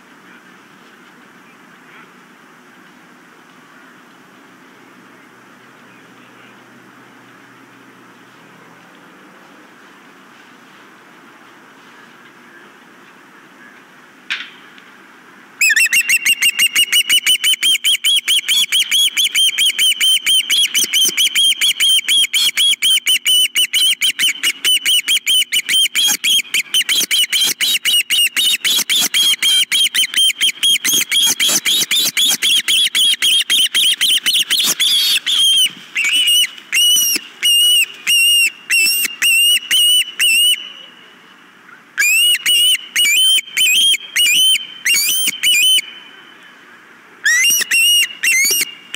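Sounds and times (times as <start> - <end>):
osprey whistled chirps: 15.6 - 41.2, 42.0 - 46.6, 47.2 - 48.9.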